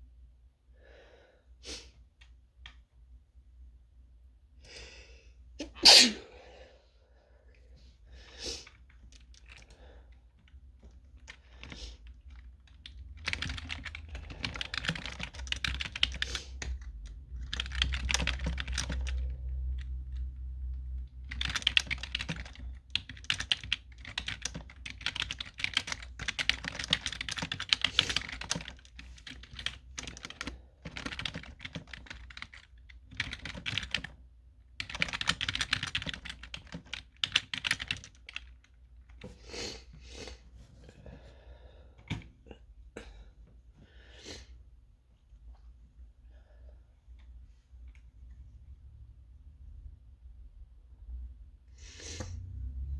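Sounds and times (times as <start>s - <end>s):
typing on computer keyboard: 8.9s - 9.8s, 10.4s - 34.2s, 34.8s - 39.2s.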